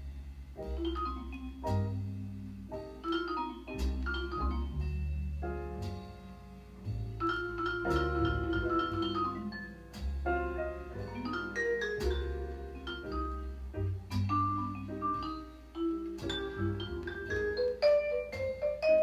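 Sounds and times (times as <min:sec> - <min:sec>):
jazz record over speakers: 0:00.0 - 0:19.0.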